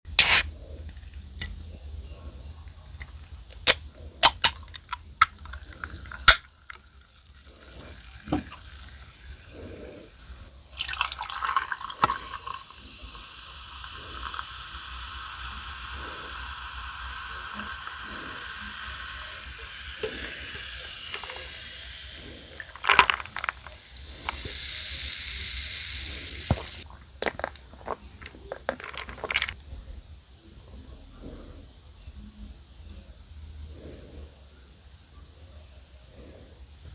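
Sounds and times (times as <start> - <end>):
running water: 4.6 - 29.6.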